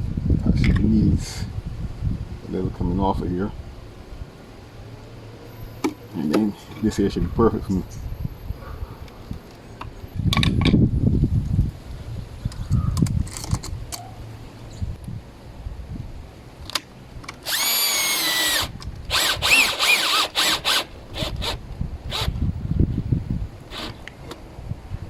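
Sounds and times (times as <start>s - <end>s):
cordless drill motor running: 17.4s - 22.4s, 23.7s - 24.0s.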